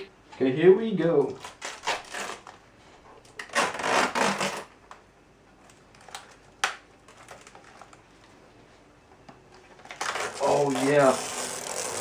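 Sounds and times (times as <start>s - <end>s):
plastic film crackling: 1.3s - 2.6s, 5.6s - 8.3s, 9.8s - 12.0s
plastic film peeling off: 1.3s - 2.6s, 9.8s - 12.0s.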